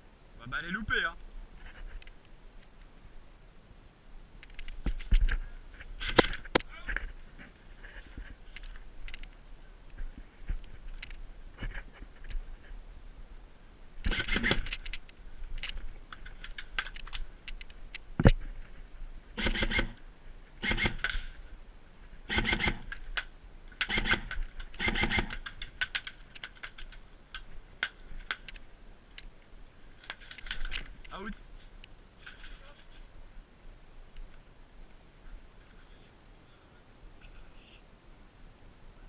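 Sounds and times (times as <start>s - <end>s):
sharp crack: 6.0s - 6.8s
airsoft guns firing bursts: 14.1s - 14.7s, 19.4s - 20.0s, 20.6s - 21.3s, 22.3s - 22.9s, 23.8s - 26.0s.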